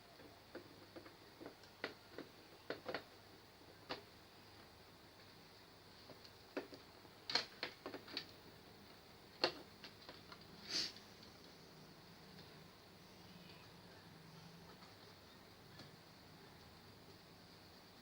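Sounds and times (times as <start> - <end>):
faint steady hum: 0.0 - 18.0
scrape: 10.6 - 11.0.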